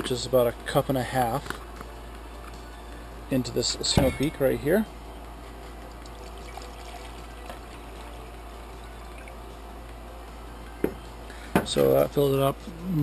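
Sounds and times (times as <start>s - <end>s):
water pouring into metal pot: 5.9s - 9.4s.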